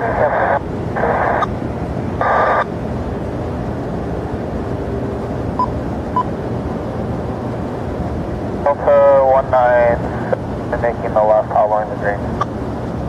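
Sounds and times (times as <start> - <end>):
radio squelch static: 0.0 - 1.5, 2.2 - 2.7, 8.7 - 12.4
low rumbling airport noise: 0.0 - 13.0
short faint beeps: 5.6 - 6.3.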